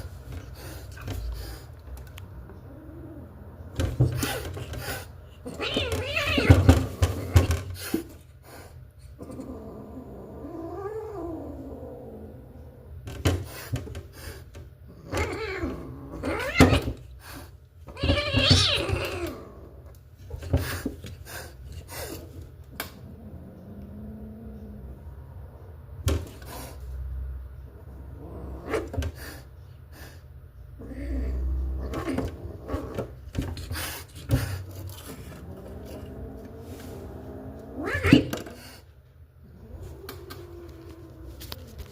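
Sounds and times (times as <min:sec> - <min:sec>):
cat yowling and meowing: 0:05.4 - 0:07.4, 0:15.0 - 0:17.0, 0:17.9 - 0:19.4, 0:37.8 - 0:38.4.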